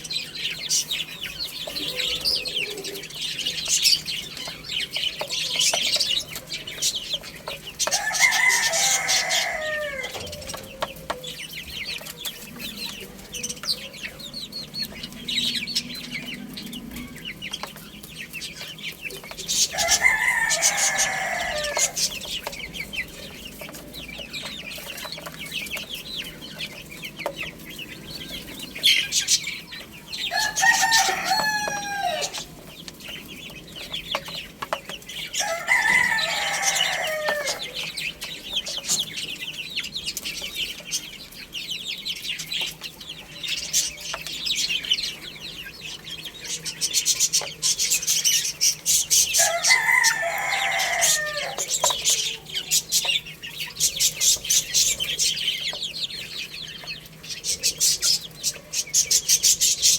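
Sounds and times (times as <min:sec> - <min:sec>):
chicks peeping: 0:00.0 - 0:59.9
hens clucking: 0:00.0 - 0:59.9
rooster crowing: 0:07.8 - 0:11.2, 0:19.5 - 0:23.2, 0:30.2 - 0:32.6, 0:35.3 - 0:38.0, 0:49.1 - 0:52.8.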